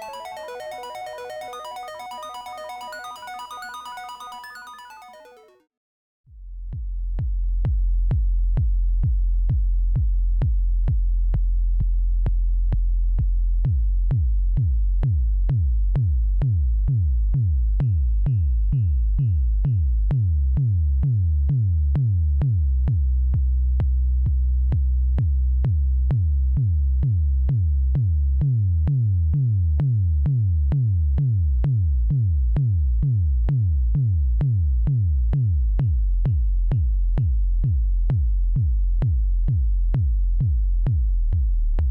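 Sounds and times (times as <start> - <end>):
synthesized kick drum hits: 6.7 - 28.1, 31.7 - 41.9.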